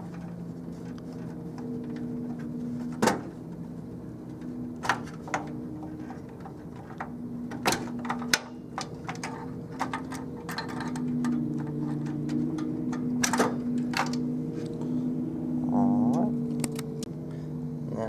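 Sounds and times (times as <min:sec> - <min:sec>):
steady low hum: 0:00.0 - 0:18.0
cable connectors clicking: 0:16.4 - 0:17.1.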